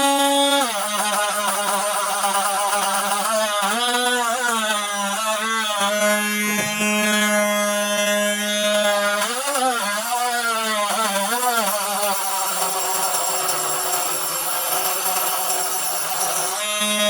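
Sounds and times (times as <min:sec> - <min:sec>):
small power tool motor whining: 0:00.0 - 0:17.0.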